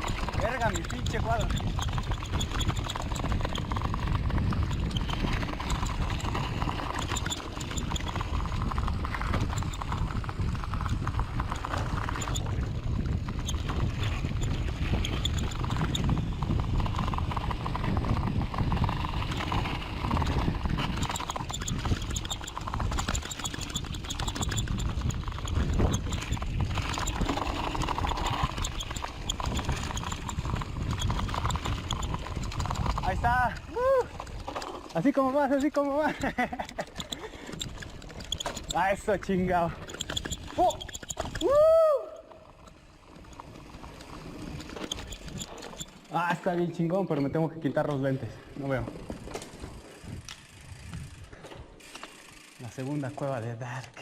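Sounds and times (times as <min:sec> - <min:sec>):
low rumble of tyres: 0:00.0 - 0:35.5
bike rattling over rough trail: 0:00.0 - 0:54.0.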